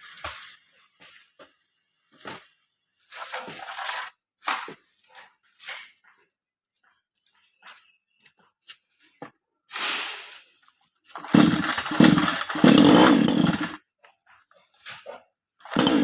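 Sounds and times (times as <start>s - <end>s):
short hissing burst: 9.7s - 10.6s
chainsaw revving: 11.1s - 13.8s, 15.6s - 16.0s.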